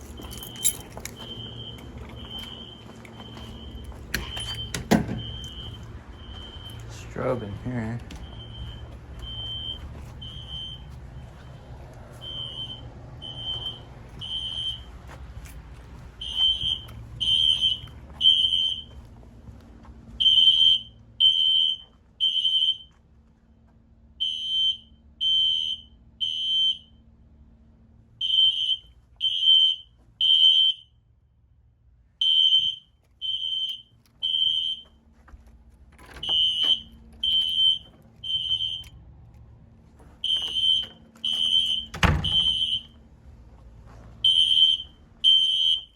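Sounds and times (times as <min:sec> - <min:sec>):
fire alarm horn beeping: 0:00.0 - 0:15.0, 0:16.2 - 0:19.0, 0:20.2 - 0:22.9, 0:24.2 - 0:27.0, 0:28.2 - 0:31.0, 0:32.2 - 0:35.0, 0:36.0 - 0:39.0, 0:40.2 - 0:43.0, 0:44.2 - 0:45.9.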